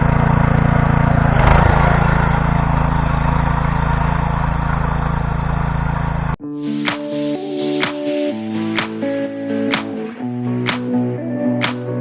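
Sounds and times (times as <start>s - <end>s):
tiller cutters working soil: 0.0s - 6.3s
tiller engine running under load: 0.0s - 6.4s.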